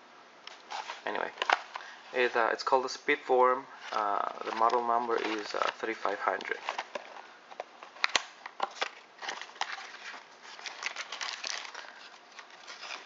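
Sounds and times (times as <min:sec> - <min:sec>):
paper packaging crinkling: 0:03.8 - 0:13.0.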